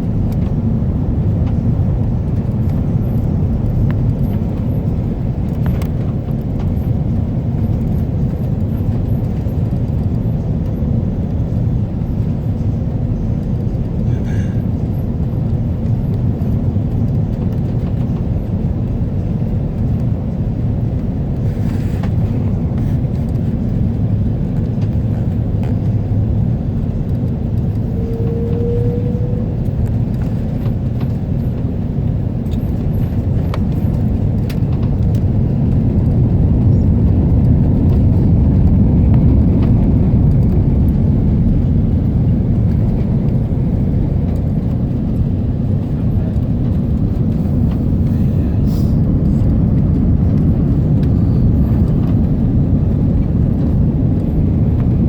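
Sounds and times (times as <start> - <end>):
airliner cabin engine rumble: 0.0 - 55.0.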